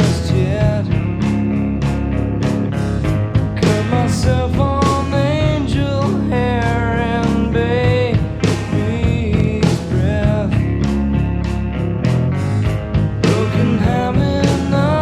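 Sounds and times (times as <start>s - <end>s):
rock music from loudspeakers: 0.0s - 15.0s.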